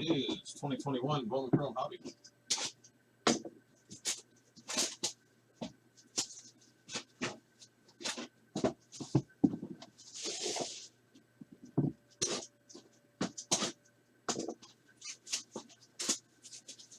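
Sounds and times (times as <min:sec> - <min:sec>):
foil packs crinkling and rustling: 0:03.9 - 0:05.2, 0:10.0 - 0:10.9, 0:14.4 - 0:16.9.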